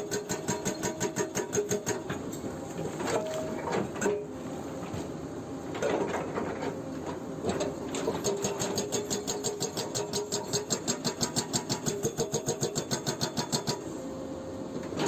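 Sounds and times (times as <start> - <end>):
hydraulic breaker hammering rock: 0.0 - 2.3, 8.0 - 13.9
excavator engine hum: 0.0 - 15.0.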